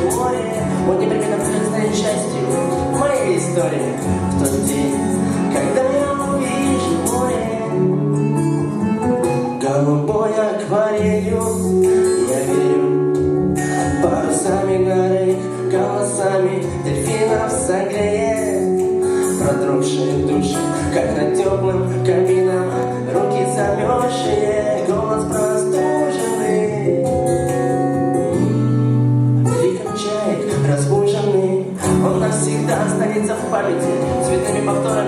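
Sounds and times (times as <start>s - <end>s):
person singing: 0.0s - 28.6s, 29.4s - 35.0s
song with guitar and bass: 0.0s - 35.0s.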